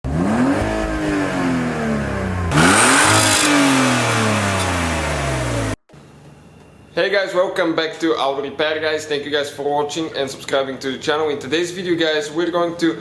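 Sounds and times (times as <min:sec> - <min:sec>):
car engine revving: 0:00.0 - 0:05.8.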